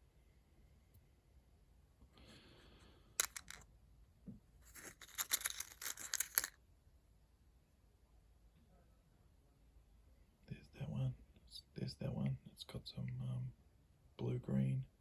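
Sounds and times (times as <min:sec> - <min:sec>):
small stones scraping: 0:03.2 - 0:03.6, 0:04.6 - 0:06.6
stones clicking: 0:03.2 - 0:03.7, 0:04.6 - 0:06.6
rustling: 0:04.6 - 0:06.6.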